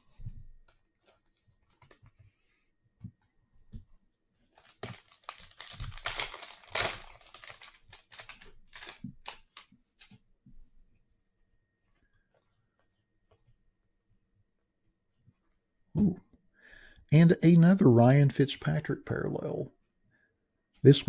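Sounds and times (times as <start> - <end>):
card packaging rustling and crinkling: 4.4 - 10.2.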